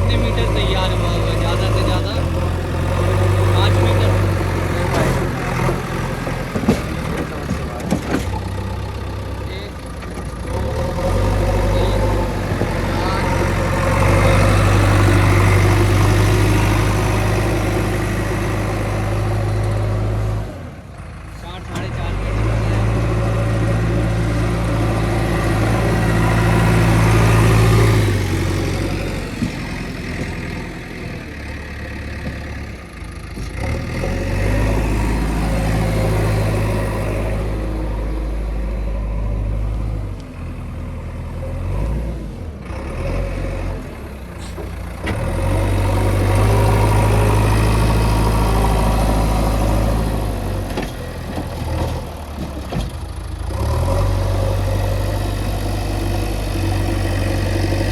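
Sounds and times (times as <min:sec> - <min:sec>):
heavy diesel engine running: 0:00.0 - 0:57.9.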